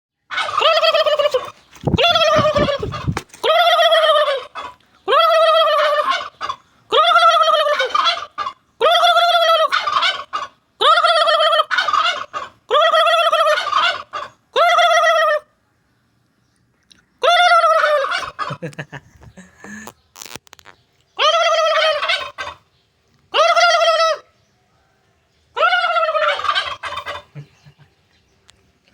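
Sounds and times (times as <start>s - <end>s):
turkey calling: 0.2s - 15.5s, 17.2s - 18.7s, 20.2s - 22.7s, 23.3s - 24.4s, 25.5s - 27.9s.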